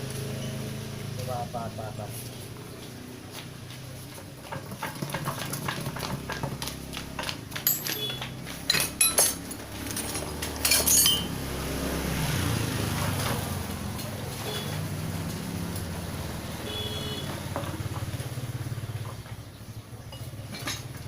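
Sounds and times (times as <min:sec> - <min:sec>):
metal tools clanking: 0:04.5 - 0:11.4, 0:20.0 - 0:21.0.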